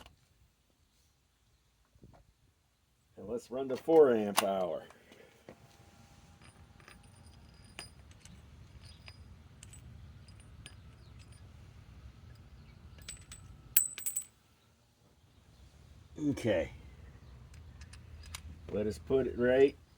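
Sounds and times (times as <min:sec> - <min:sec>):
faint low hum: 0:00.0 - 0:19.9
sharp metallic clicks and clinks: 0:06.4 - 0:11.6, 0:12.3 - 0:14.4, 0:17.4 - 0:19.0.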